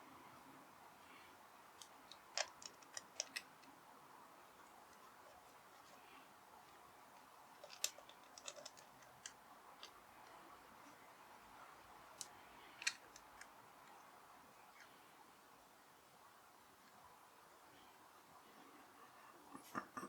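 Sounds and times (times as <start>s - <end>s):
hand tools clicking and tapping: 1.8s - 3.7s, 7.6s - 10.0s.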